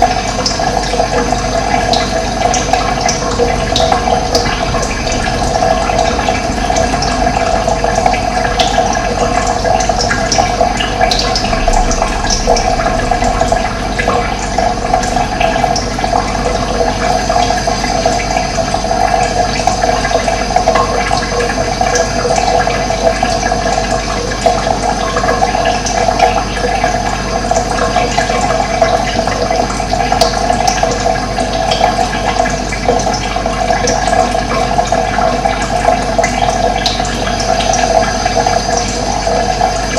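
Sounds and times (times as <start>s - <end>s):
running water rushing: 0.0s - 39.9s.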